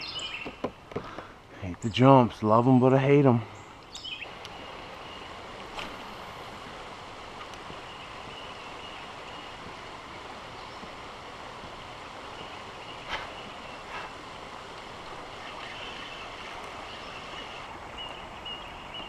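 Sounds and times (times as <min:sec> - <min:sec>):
creek water rushing: 0:00.0 - 0:19.0
faint clicks: 0:03.8 - 0:04.6, 0:07.4 - 0:07.8.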